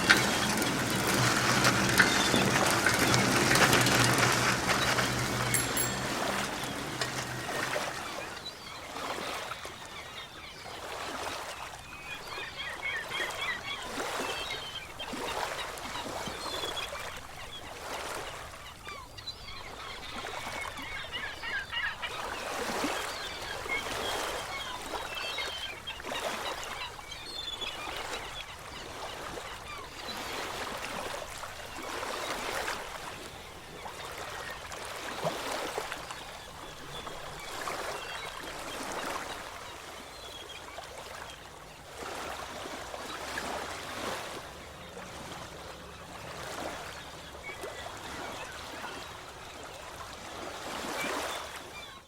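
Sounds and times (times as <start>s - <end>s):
ocean waves washing in: 0.0s - 9.7s
birds calling: 0.0s - 52.0s.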